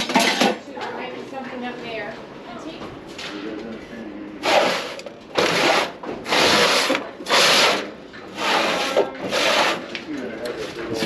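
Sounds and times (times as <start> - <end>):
rough scraping on hard surface: 4.4 - 9.9.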